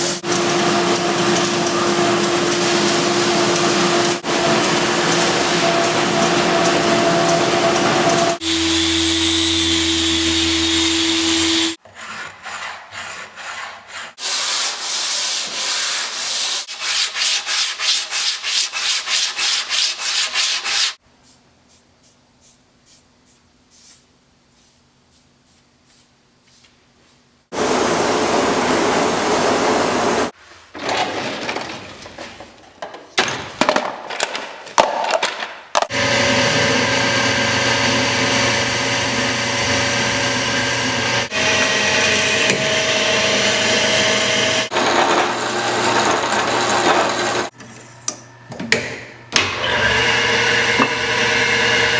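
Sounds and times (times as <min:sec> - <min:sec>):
power tool running: 0:00.0 - 0:11.8, 0:35.9 - 0:47.5, 0:49.4 - 0:51.9.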